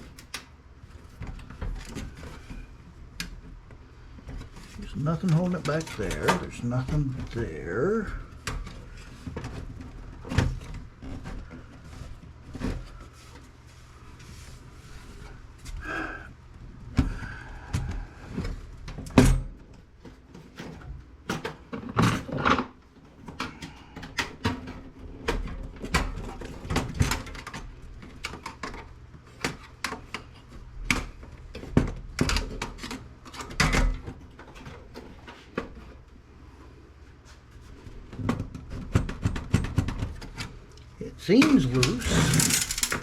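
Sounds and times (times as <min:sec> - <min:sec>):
metal clicks knocks and rattles: 0:42.1 - 0:43.0.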